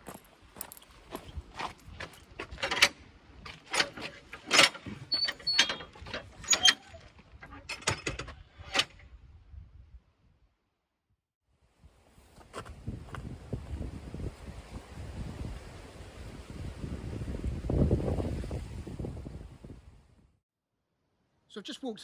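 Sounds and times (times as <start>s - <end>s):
footsteps crunching on path: 0.0s - 2.6s, 12.2s - 13.4s
thin squeak: 5.0s - 7.8s.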